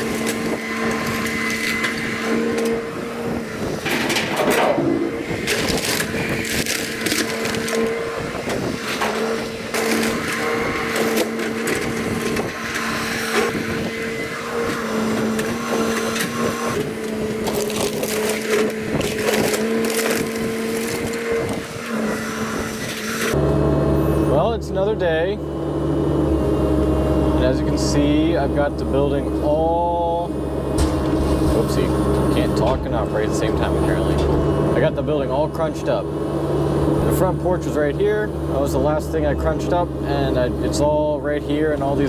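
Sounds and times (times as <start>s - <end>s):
wood cracking and splintering: 0.0s - 23.3s
excavator engine running: 0.0s - 42.0s.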